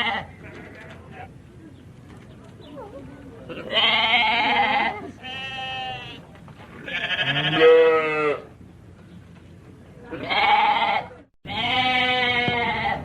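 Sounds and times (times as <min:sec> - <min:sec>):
goat bleating: 0:03.5 - 0:06.2, 0:06.8 - 0:08.4, 0:10.1 - 0:13.0.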